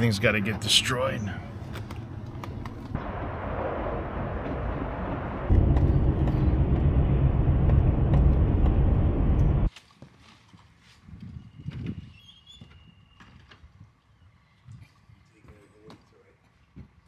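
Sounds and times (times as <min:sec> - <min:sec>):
vehicle engine and road rumble: 0:00.0 - 0:09.7.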